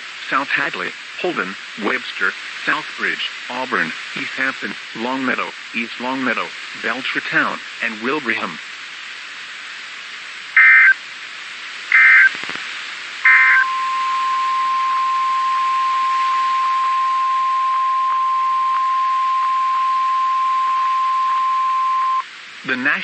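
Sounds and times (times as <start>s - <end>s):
radio hiss: 0.0s - 23.0s
steady warning alarm tone: 10.6s - 11.0s, 13.3s - 22.2s
warbling digital header tones: 13.3s - 22.2s.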